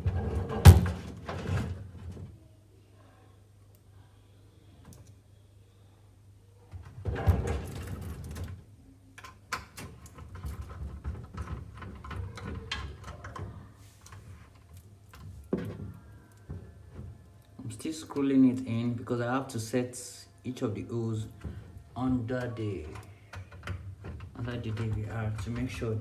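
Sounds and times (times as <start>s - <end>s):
light clicks and knocks: 9.2s - 18.3s, 21.1s - 26.0s.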